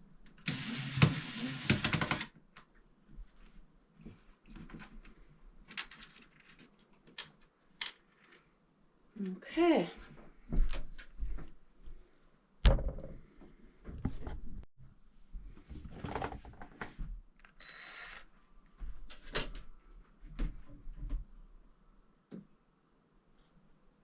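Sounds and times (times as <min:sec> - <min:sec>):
objects knocking and clattering: 0:12.6 - 0:13.2.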